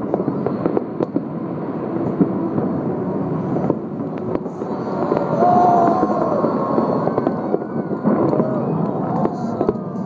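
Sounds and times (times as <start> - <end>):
fireworks bursts rumbling: 0.0 - 10.0
sharp firework cracks: 3.5 - 10.0.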